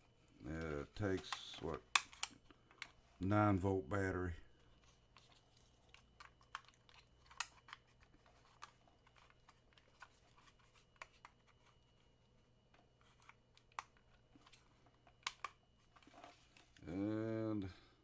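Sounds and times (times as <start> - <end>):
faint low hum: 0.0 - 18.0
plastic device clicks and taps: 1.2 - 3.0, 15.2 - 15.6.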